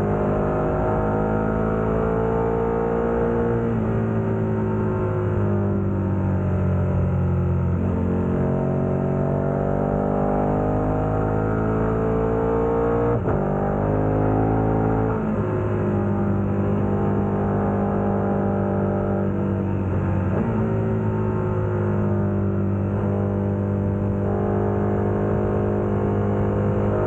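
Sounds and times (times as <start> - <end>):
motorcycle engine accelerating: 0.0 - 27.0.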